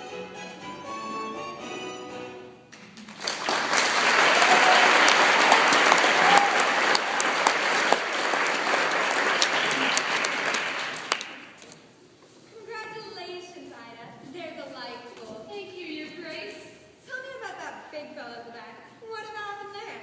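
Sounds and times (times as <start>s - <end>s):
orchestral show tune: 0.0s - 2.7s
audience applause: 2.8s - 11.6s.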